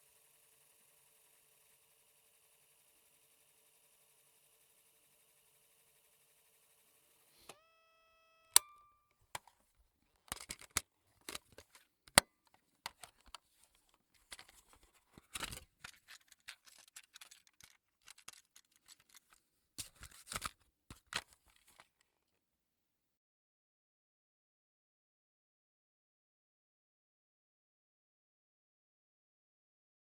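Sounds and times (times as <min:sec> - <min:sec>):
cassette tape plastic clattering: 0:10.2 - 0:22.0.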